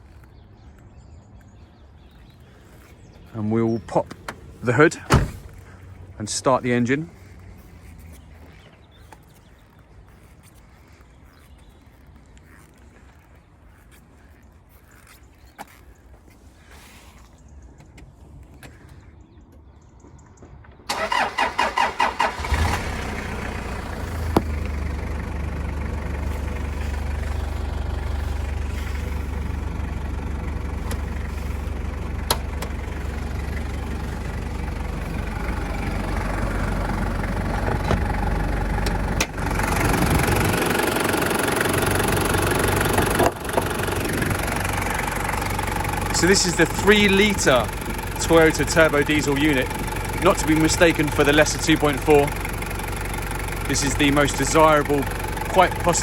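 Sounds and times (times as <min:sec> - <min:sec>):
diesel engine idling: 0:02.2 - 0:09.5, 0:20.9 - 0:56.0
starter motor cranking: 0:20.9 - 0:56.0.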